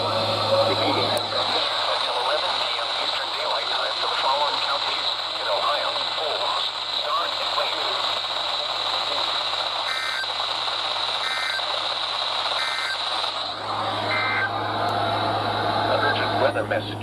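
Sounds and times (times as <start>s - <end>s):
radio hiss: 0.0s - 14.5s
two-tone electronic chirps: 9.9s - 10.3s, 11.2s - 11.7s, 12.6s - 13.0s.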